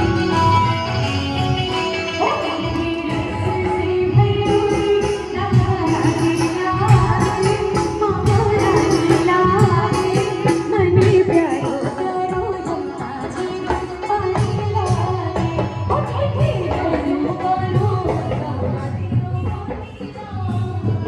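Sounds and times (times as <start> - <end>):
drum beats: 0.0 - 21.0.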